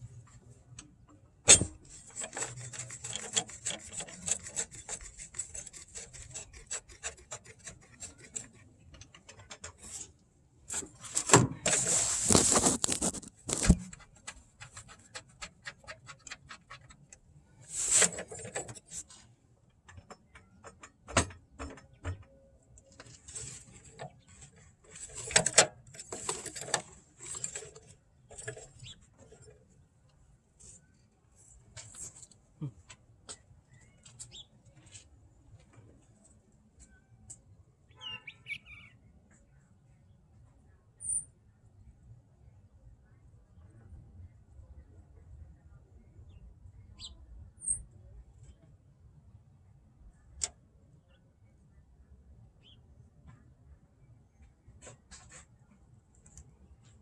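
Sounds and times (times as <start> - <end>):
rubbing and scraping of parts: 0.0 - 37.0, 54.7 - 57.0.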